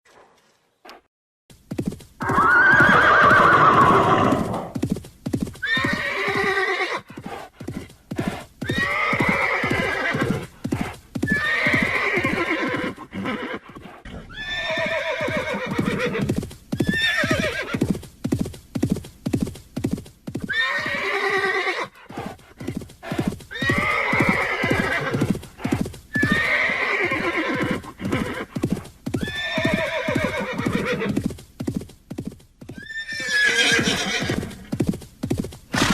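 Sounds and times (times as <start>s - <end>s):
hooves clopping: 0.1s - 35.9s
horses neighing: 2.2s - 4.8s, 5.6s - 17.8s, 20.5s - 31.2s, 32.8s - 34.8s.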